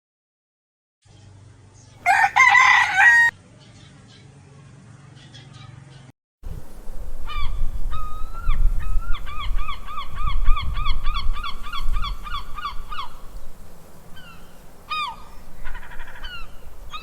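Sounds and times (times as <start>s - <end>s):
goose honking: 14.2s - 17.0s.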